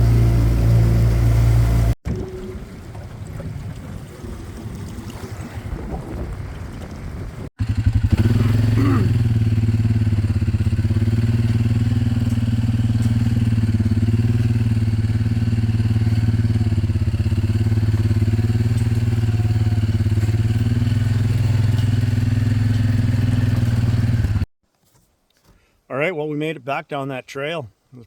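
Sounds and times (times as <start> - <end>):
engine running steadily: 0.0 - 3.2, 7.6 - 24.5.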